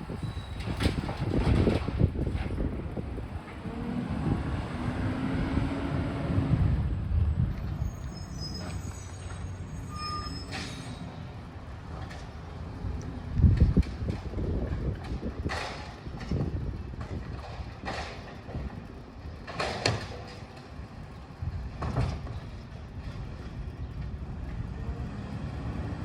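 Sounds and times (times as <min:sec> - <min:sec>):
garbage truck engine running: 0:00.0 - 0:26.0
brief high squeaks: 0:07.8 - 0:11.2.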